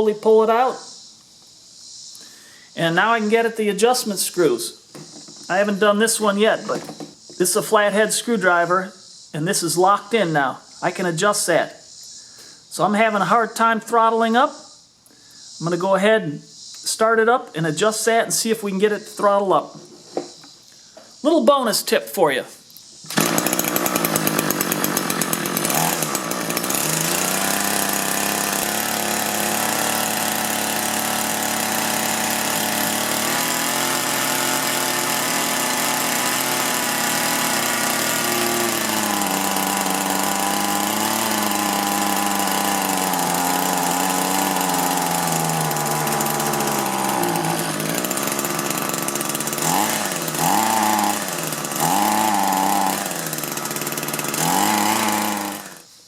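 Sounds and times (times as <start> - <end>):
hedge trimmer engine revving: 5.4 - 8.6, 23.1 - 55.9.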